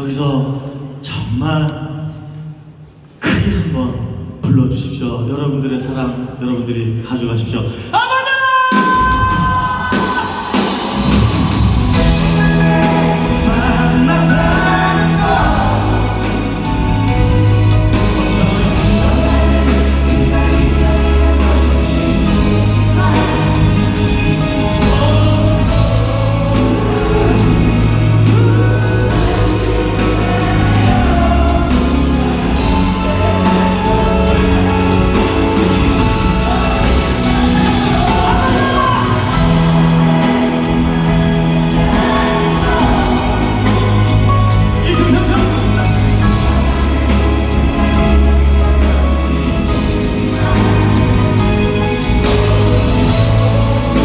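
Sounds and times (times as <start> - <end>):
crowd singing along: 8.7 - 54.0
live band playing a ballad: 8.7 - 54.0
sustained bass notes: 10.6 - 54.0.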